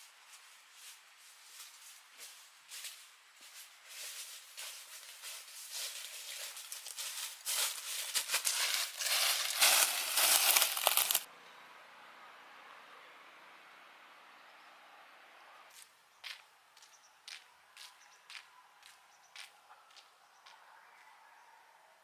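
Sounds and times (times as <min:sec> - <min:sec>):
dry vegetation rustling and crackling: 0:00.0 - 0:11.3.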